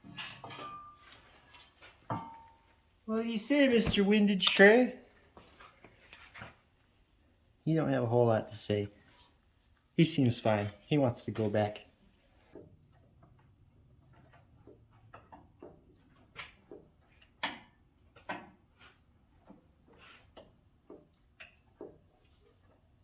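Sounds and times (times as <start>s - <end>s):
tools clicking and knocking: 3.9s - 4.8s.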